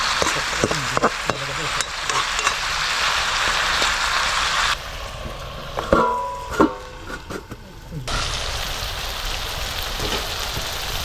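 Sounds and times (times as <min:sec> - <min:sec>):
food sizzling in a frying pan: 0:00.0 - 0:11.0.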